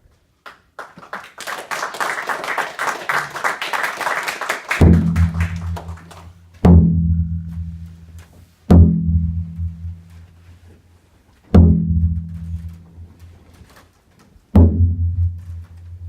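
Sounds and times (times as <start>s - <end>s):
low booming drum beats: 4.8s - 10.3s, 11.6s - 13.1s, 14.6s - 16.0s.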